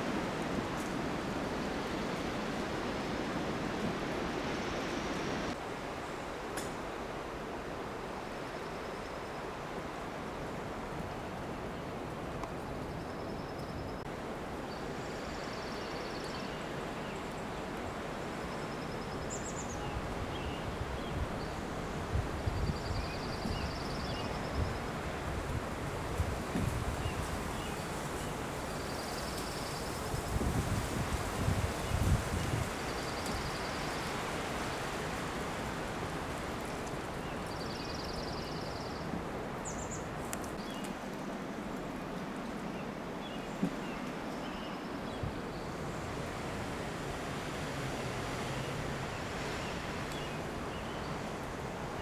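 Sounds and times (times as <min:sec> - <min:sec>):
wind rushing through pine trees: 0:00.0 - 0:52.0
wind buffeting microphone: 0:19.3 - 0:40.6.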